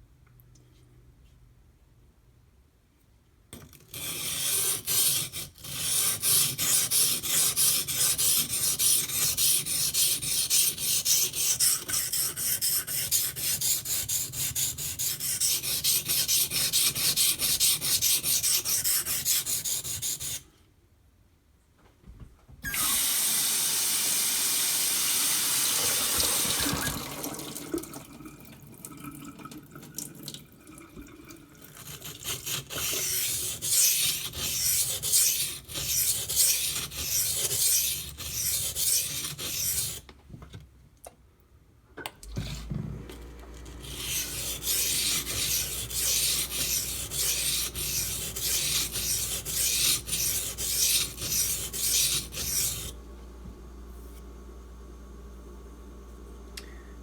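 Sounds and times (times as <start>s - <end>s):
knife scraping on whetstone: 3.8s - 20.4s, 31.8s - 40.0s, 43.7s - 53.0s
running water: 25.6s - 31.8s.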